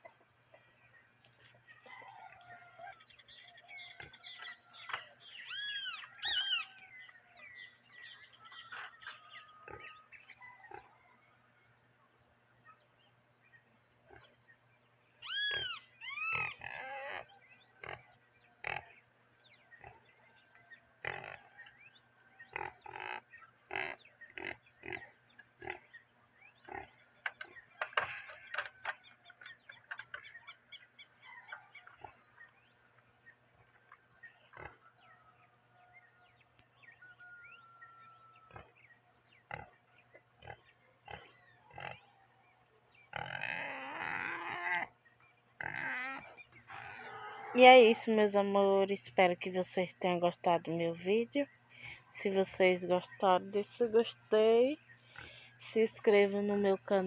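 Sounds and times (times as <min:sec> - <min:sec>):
drawn-out animal calls: 0:15.2 - 0:18.9, 0:43.1 - 0:45.0, 0:45.6 - 0:47.6.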